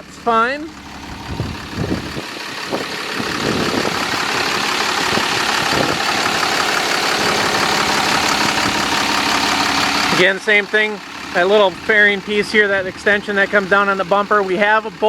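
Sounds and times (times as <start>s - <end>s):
diesel engine idling: 0.0s - 15.0s.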